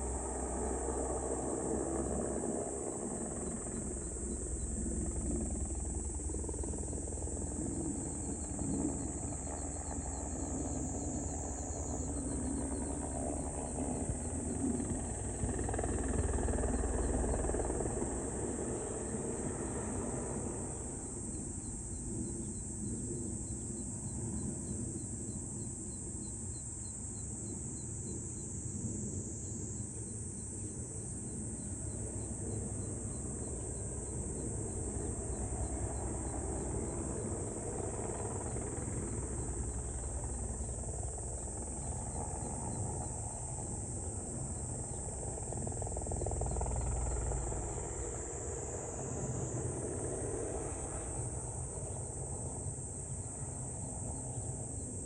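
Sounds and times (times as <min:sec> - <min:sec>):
insect chorus: 0:00.0 - 0:55.0.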